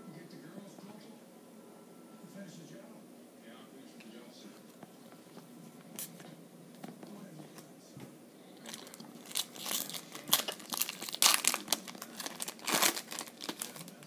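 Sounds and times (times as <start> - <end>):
foil wrapper crinkling and tearing: 8.6 - 14.0.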